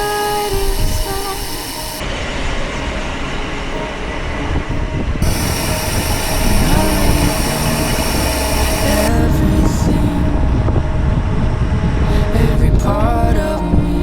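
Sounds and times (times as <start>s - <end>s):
pop song: 0.0s - 2.0s, 5.2s - 11.3s, 12.0s - 14.0s
steady rumble and rattle: 4.5s - 14.0s.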